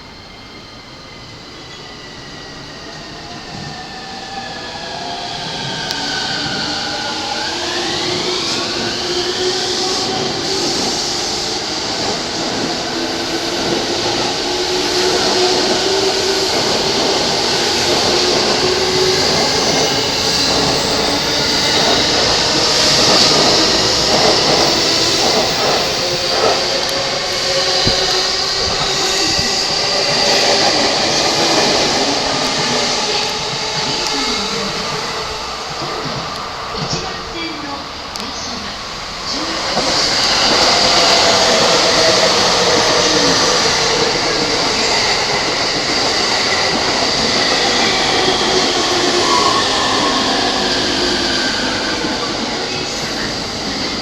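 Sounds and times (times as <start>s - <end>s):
wheel and rail noise: 11.9s - 38.7s
electric train motor whine: 15.3s - 30.5s.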